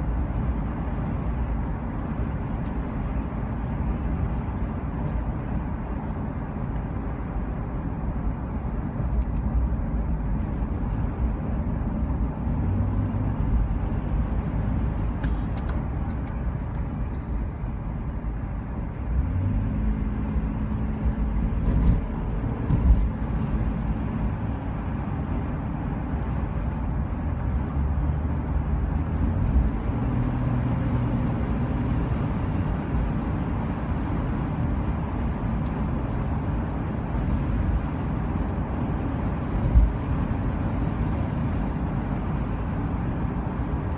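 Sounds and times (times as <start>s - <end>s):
vehicle engine and road rumble: 0.0s - 43.9s.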